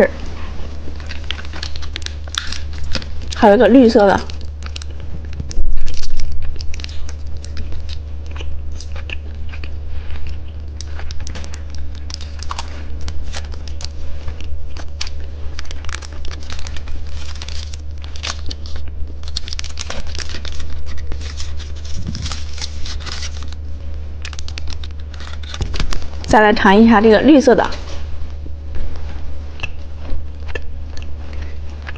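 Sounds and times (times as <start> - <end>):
low hum: 0.0 - 31.9
plastic wrapper crinkling: 0.8 - 9.6, 10.3 - 23.6, 24.2 - 26.3.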